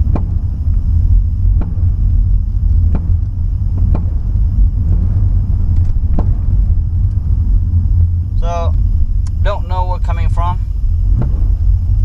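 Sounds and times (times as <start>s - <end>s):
sharp pops: 0.0s - 7.2s
low engine and road rumble: 0.0s - 12.0s.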